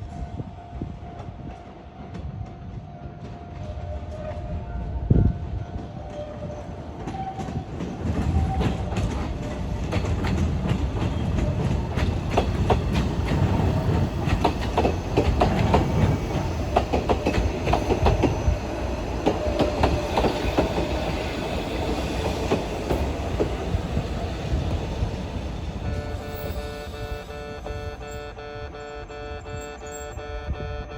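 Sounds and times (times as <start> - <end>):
train wheels clattering over joints: 5.8 - 25.8.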